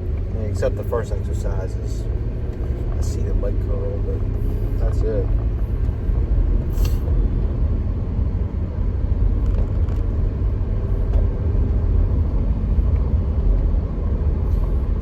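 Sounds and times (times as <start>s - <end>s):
car interior rumble: 0.0s - 15.0s.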